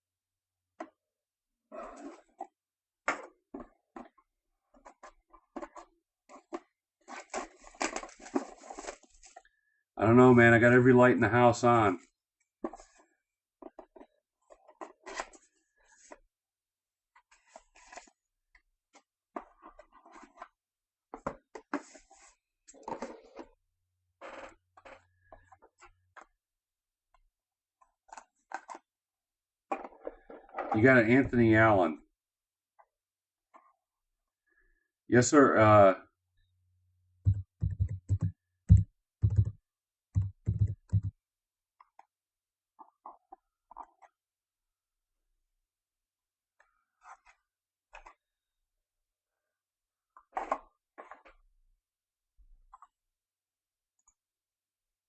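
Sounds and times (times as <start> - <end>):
cards and packaging rustling: 4.8 - 9.5, 17.2 - 18.2
sharp clicks and knocks: 37.3 - 39.6, 40.2 - 41.1.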